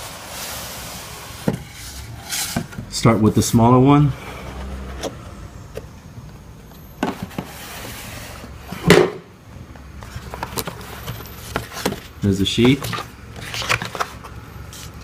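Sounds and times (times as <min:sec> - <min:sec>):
packaging clicks and rustles: 0:10.0 - 0:15.0.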